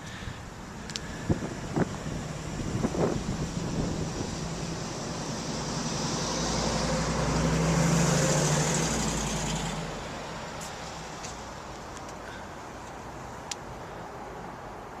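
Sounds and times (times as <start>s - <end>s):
vehicle passing by: 1.1s - 11.6s.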